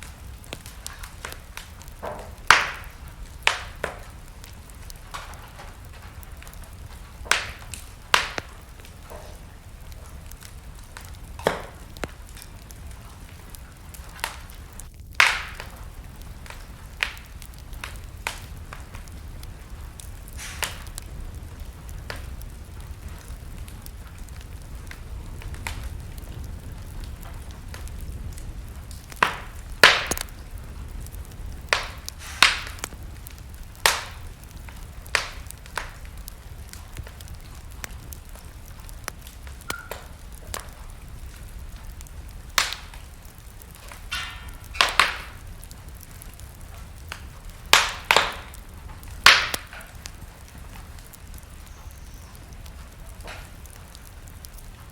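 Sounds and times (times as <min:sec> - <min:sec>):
fire crackling and popping: 0:00.0 - 0:54.9
wood fire rumbling: 0:00.0 - 0:54.9.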